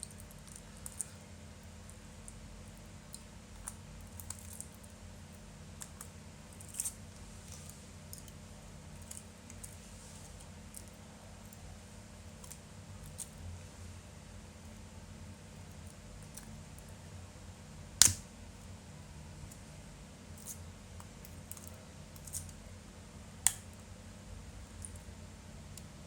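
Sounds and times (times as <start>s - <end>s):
faint low hum: 0.0s - 26.0s
sharp click: 18.0s - 18.2s.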